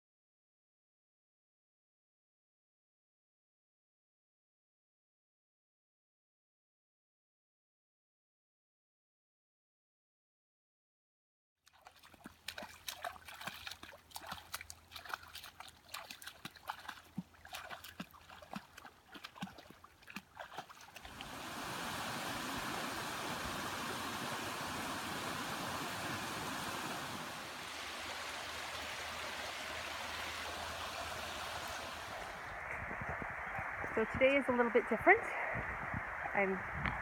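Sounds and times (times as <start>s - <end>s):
water trickling and dripping: 11.7s - 34.8s
water rushing: 11.9s - 37.0s.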